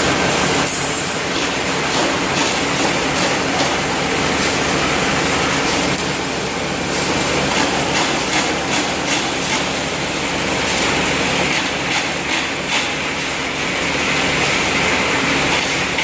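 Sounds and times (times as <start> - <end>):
welding machine electrical hum: 0.0 - 16.0
welding clicks and knocks: 7.5 - 9.8, 11.5 - 13.0.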